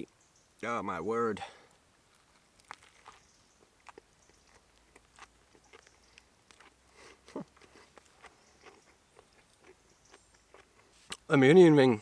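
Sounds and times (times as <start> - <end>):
person chewing crunchy food: 2.1 - 11.3.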